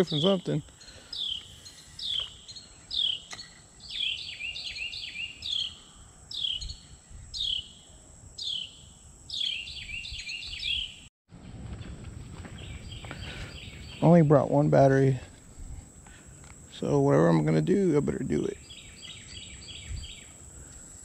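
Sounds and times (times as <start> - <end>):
songbird whistling: 0.0 - 7.8, 8.4 - 11.1.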